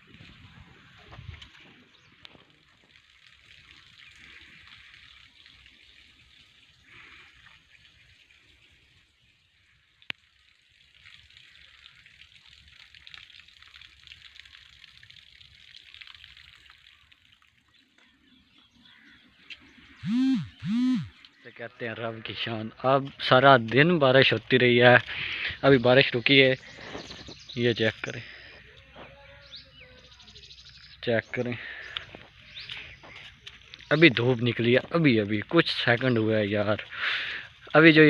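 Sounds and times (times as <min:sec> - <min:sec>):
short loud calls: 0:20.0 - 0:21.2.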